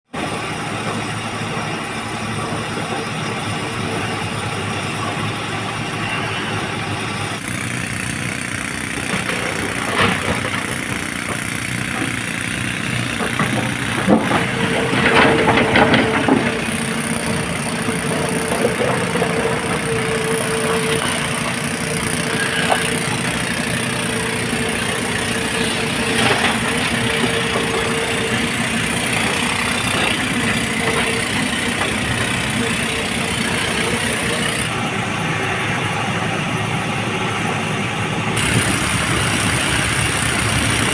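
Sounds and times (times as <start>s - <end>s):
diesel engine running: 0.1s - 40.9s
steady whine: 0.2s - 40.9s.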